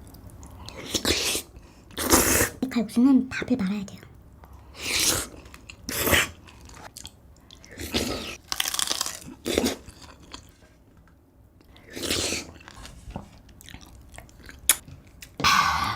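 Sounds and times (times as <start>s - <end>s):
crunchy chewing: 5.0s - 10.8s, 11.7s - 15.4s.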